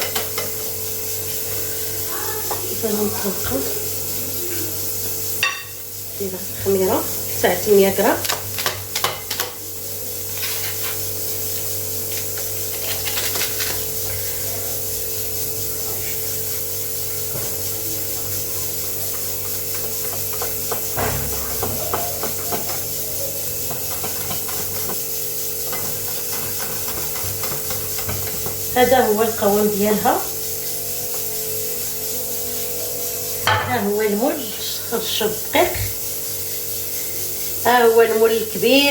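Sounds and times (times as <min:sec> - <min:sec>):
batter mixing scrapes and knocks: 0:06.6 - 0:31.4.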